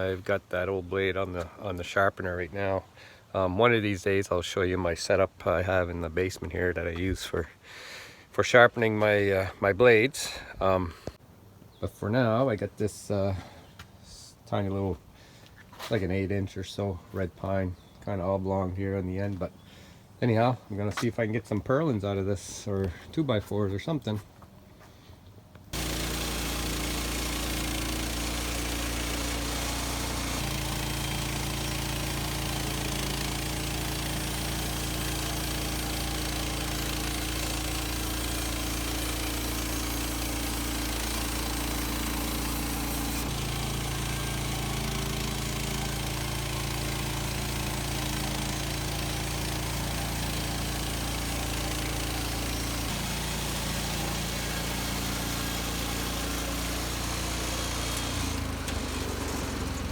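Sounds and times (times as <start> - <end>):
small gas engine running: 25.7 - 59.9.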